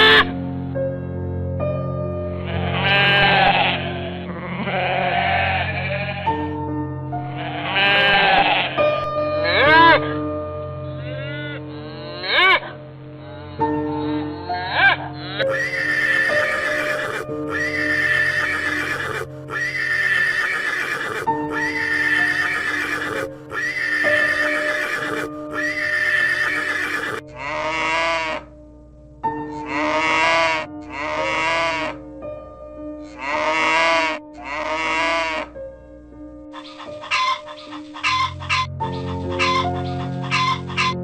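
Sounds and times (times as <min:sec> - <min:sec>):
farm animal calls: 0:00.0 - 0:00.3, 0:02.5 - 0:06.3, 0:07.4 - 0:08.8, 0:09.4 - 0:10.1, 0:11.0 - 0:12.8, 0:14.0 - 0:28.5, 0:29.5 - 0:32.0, 0:33.0 - 0:35.6, 0:36.5 - 0:41.0
background music: 0:00.0 - 0:41.0.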